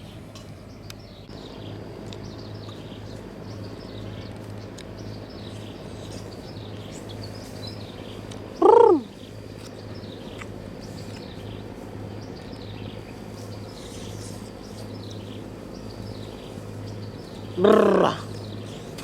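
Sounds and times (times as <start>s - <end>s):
steady low hum: 0.0s - 19.0s
animal call rising and falling: 8.6s - 9.1s, 17.6s - 18.3s.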